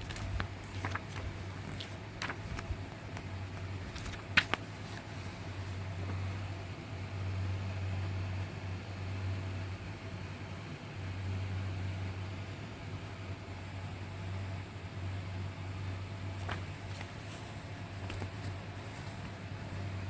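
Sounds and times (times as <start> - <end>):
packaging clicks and rustles: 0.0 - 5.7, 16.4 - 19.9
steady low hum: 0.0 - 20.0.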